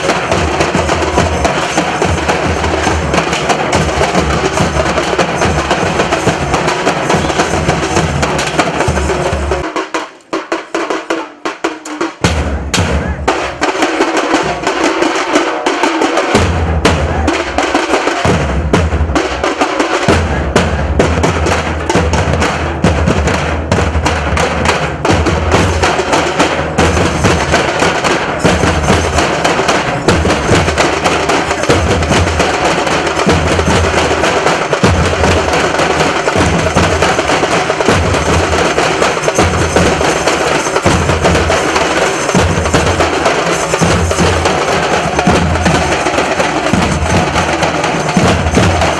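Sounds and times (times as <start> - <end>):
dhol drum ensemble playing: 0.0 - 48.9.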